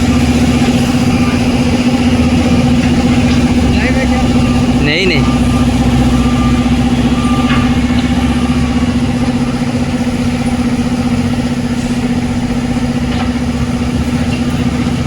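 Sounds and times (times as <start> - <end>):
machinery droning with low hum: 0.0 - 15.0.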